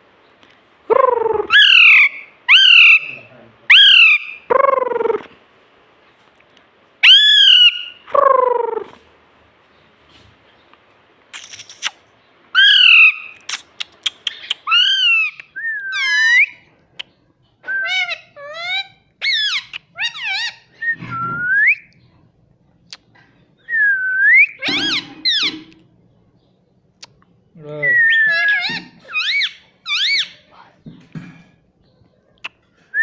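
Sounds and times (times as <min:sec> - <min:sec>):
parrot whistling and chirping: 0:01.0 - 0:05.2, 0:07.0 - 0:08.1, 0:12.6 - 0:13.4, 0:14.1 - 0:16.6, 0:17.6 - 0:21.9, 0:23.6 - 0:25.7, 0:27.8 - 0:30.4.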